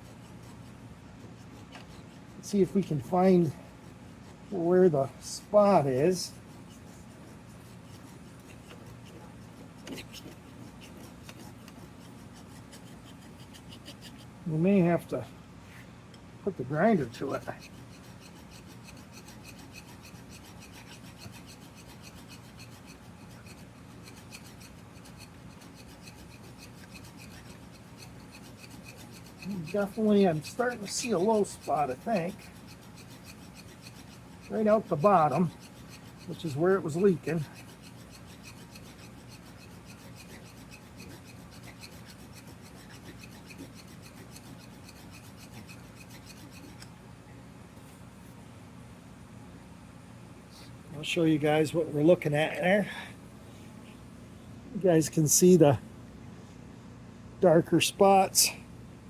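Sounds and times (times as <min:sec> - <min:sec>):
hand file rasping on metal: 0:00.0 - 0:15.0, 0:16.8 - 0:46.9.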